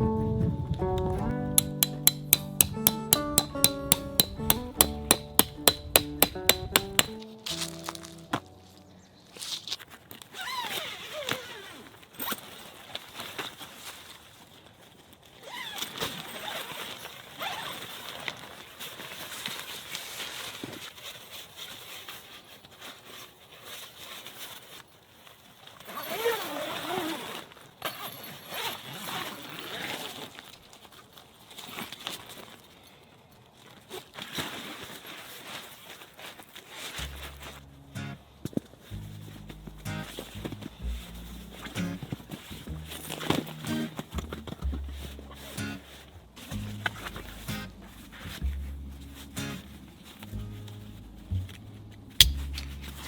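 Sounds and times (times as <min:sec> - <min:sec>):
rustling and crinkling: 0:07.2 - 0:10.4, 0:15.8 - 0:26.0, 0:27.2 - 0:37.6
squeaky creaks of snow: 0:10.3 - 0:11.8.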